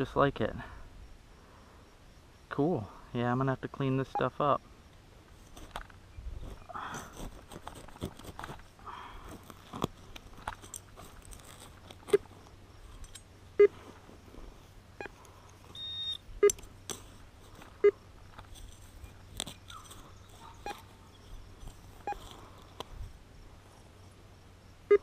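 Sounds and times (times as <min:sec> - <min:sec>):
metal detector beep: 0:04.1 - 0:04.4, 0:13.6 - 0:13.8, 0:15.0 - 0:16.6, 0:17.8 - 0:18.0, 0:20.5 - 0:21.3, 0:22.0 - 0:22.3
digging tool knocking and scraping: 0:06.6 - 0:08.7.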